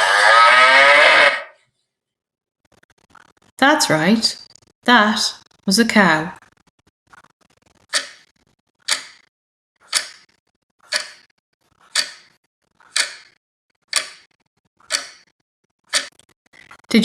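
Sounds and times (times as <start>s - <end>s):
clock ticking: 7.9s - 17.0s.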